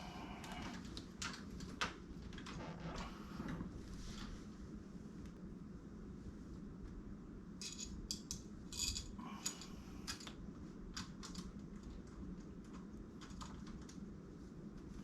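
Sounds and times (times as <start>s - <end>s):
small metal parts clinking: 7.6s - 10.3s.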